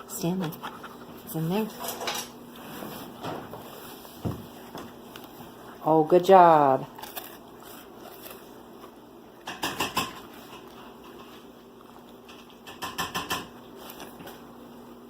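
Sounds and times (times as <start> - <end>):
dog sniffing: 0.0 - 1.8.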